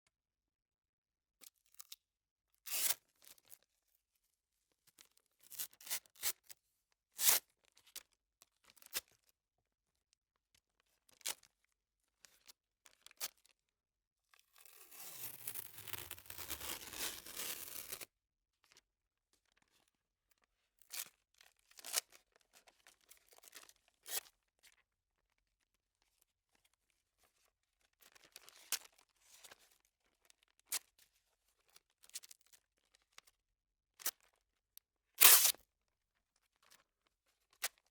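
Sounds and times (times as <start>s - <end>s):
adhesive tape ripping: 15.2s - 18.0s, 35.2s - 35.6s.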